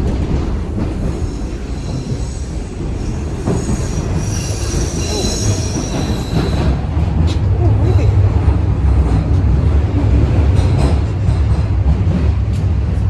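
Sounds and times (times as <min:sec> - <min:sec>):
subway train rumble: 0:00.0 - 0:13.0
wheel squeal on track: 0:03.0 - 0:06.8.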